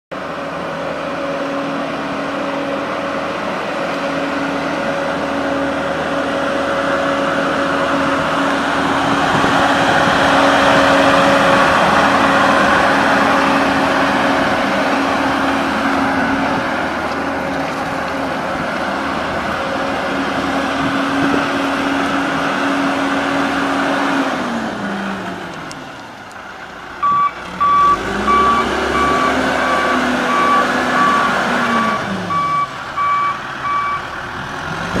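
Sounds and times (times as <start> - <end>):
diesel engine running under load: 0.1 - 35.0
reversing alarm beeps: 27.0 - 34.1.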